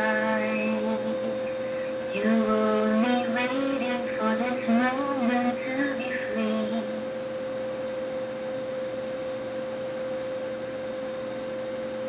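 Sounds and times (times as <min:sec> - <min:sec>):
steady pure tone: 0:00.0 - 0:12.0.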